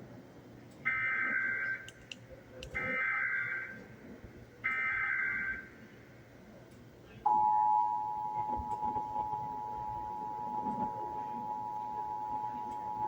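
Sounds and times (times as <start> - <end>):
two-tone alert signal: 7.3 - 13.0.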